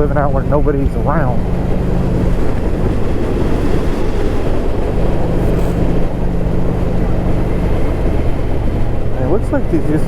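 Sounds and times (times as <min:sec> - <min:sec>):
road and tyre noise: 0:00.0 - 0:10.0
vehicle engine hum: 0:00.0 - 0:10.0.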